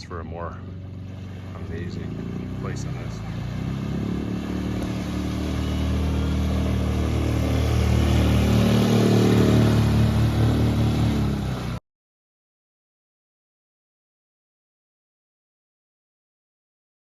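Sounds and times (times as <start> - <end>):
outboard motor running: 0.0 - 11.8.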